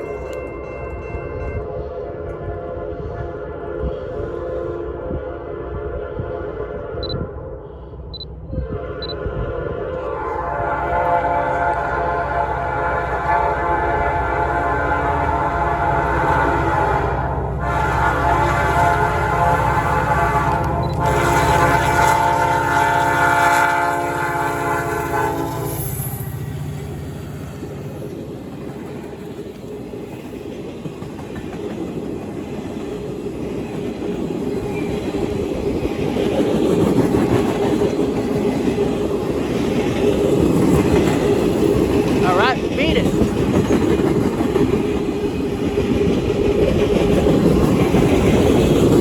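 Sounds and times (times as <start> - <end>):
locomotive air horn: 1.4 - 7.3, 8.5 - 25.9
train wheels clacking over rail joints: 28.4 - 49.0.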